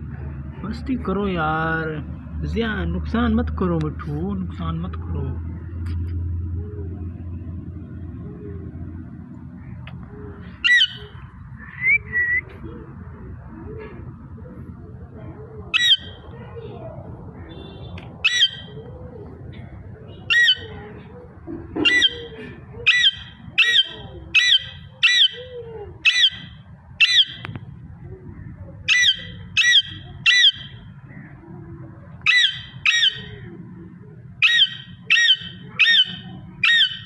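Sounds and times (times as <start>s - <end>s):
parrot squawking: 10.6s - 11.2s, 15.7s - 16.3s, 17.4s - 18.8s, 20.1s - 20.8s, 21.8s - 27.5s, 28.9s - 31.2s, 32.2s - 33.5s, 34.4s - 37.0s.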